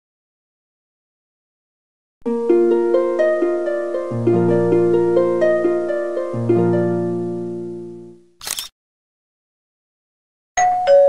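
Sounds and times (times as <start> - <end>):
harp-like plucked melody: 2.3 - 8.1.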